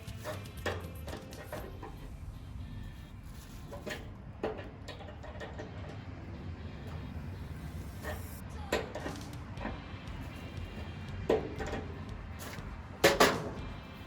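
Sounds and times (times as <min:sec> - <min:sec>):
hand tools tapping metal: 0:00.0 - 0:02.1, 0:03.4 - 0:06.2, 0:08.0 - 0:14.0
steady low hum: 0:00.0 - 0:14.0.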